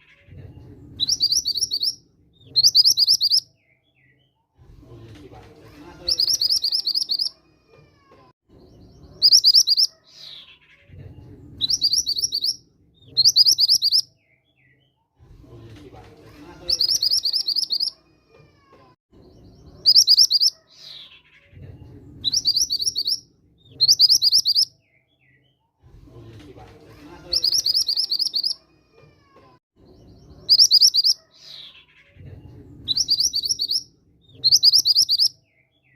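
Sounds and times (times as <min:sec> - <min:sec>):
recorded bird trills: 0:00.0 - 0:04.2, 0:06.0 - 0:07.4, 0:08.6 - 0:14.8, 0:16.6 - 0:18.0, 0:19.2 - 0:21.6, 0:22.2 - 0:25.4, 0:27.2 - 0:28.6, 0:29.8 - 0:32.2, 0:32.8 - 0:35.9
faint low murmur: 0:31.4 - 0:34.4.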